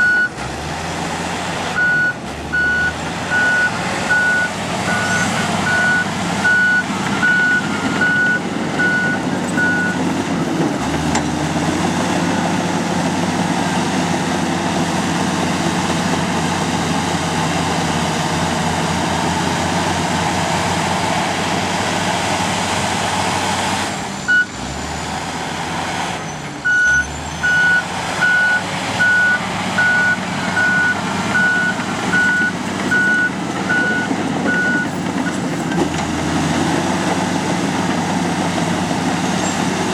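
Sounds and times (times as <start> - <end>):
bulldozer diesel engine running: 0.0 - 39.9
reverse alarm beeping: 1.8 - 10.0, 26.7 - 34.9.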